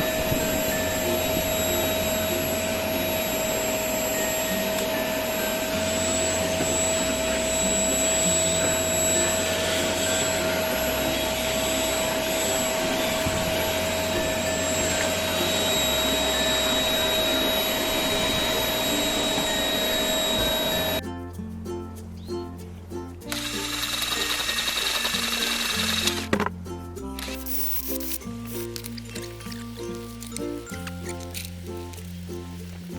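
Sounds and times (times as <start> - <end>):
low bass line: 0.0 - 24.1
scooter engine whirring: 23.4 - 26.5.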